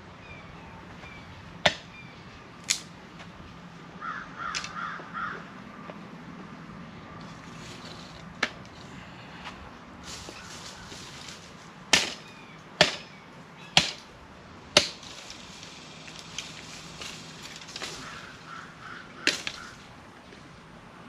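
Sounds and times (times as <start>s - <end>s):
wood being chopped: 1.6s - 1.9s, 8.4s - 8.6s, 11.9s - 13.1s, 13.8s - 14.1s, 14.8s - 15.1s, 19.2s - 19.7s
bird calling harshly: 4.0s - 5.5s, 10.2s - 14.0s, 15.1s - 19.9s.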